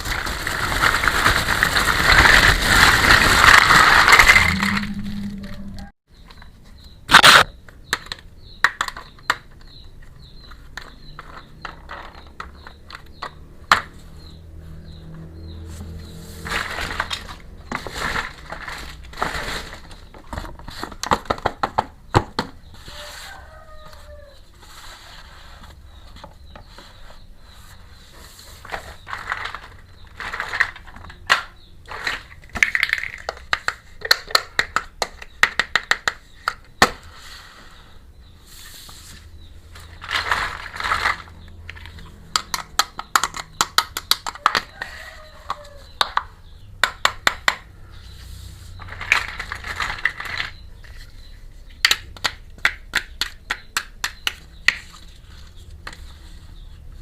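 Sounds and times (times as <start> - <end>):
plastic packaging crinkling: 0.0 - 5.9
plastic toy pieces clicking: 29.1 - 36.7.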